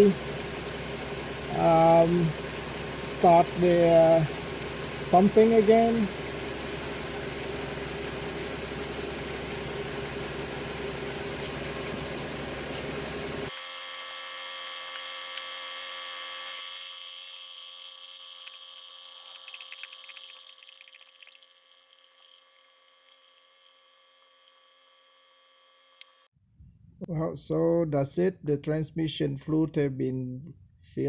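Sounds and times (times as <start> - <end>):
car engine idling with whine: 0.0 - 13.5.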